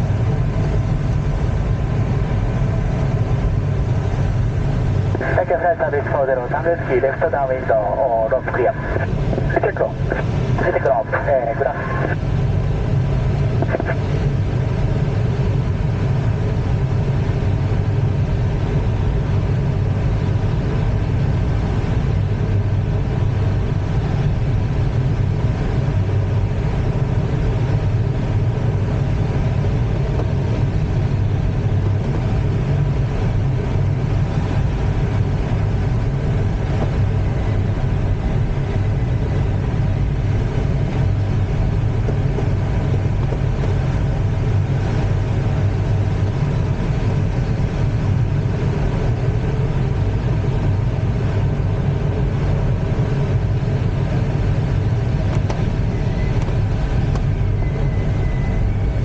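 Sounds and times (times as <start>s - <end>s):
glider cockpit airflow rush: 0.0s - 16.6s.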